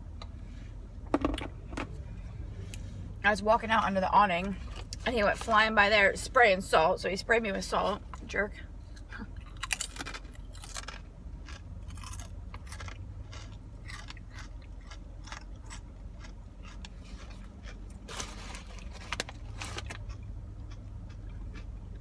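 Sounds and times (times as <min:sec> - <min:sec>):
car heater hum: 0:00.0 - 0:22.0
person chewing crunchy food: 0:09.0 - 0:22.0.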